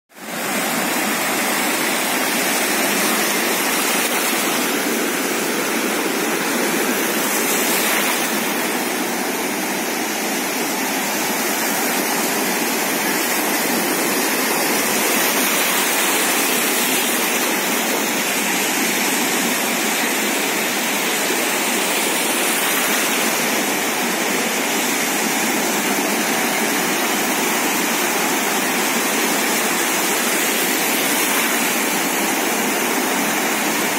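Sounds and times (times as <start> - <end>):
sea water rushing against shore: 0.2 - 33.9.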